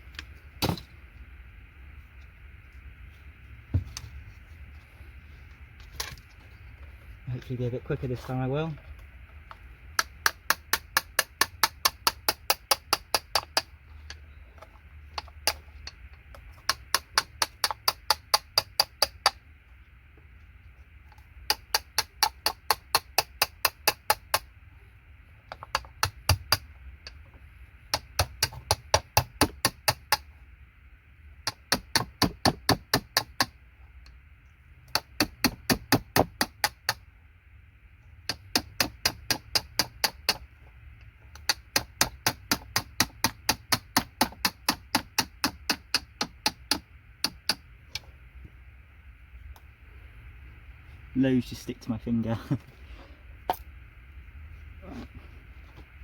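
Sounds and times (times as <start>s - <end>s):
hand tool tapping metal: 10.0s - 13.7s, 38.3s - 40.4s, 41.3s - 48.0s.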